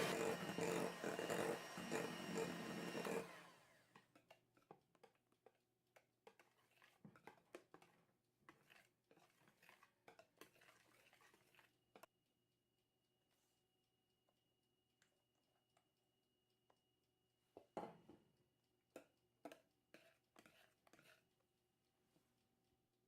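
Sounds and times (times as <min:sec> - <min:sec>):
electric hand mixer running: 0:00.0 - 0:04.0.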